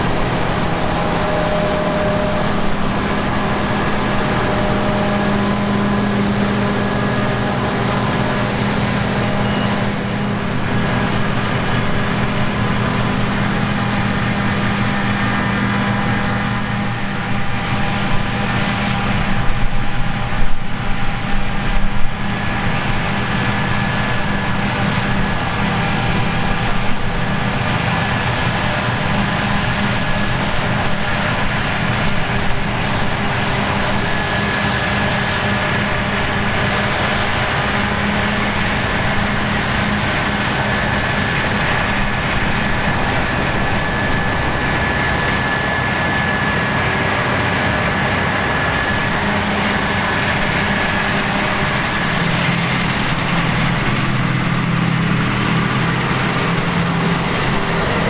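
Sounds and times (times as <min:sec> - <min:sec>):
thin high whine: 0:00.0 - 0:17.9
combine harvester engine drone: 0:00.0 - 0:58.0.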